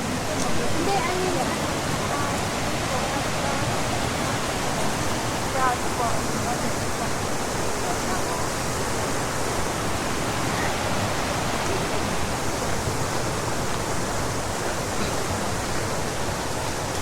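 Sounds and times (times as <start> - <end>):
water rushing over rocks: 0.0 - 17.0.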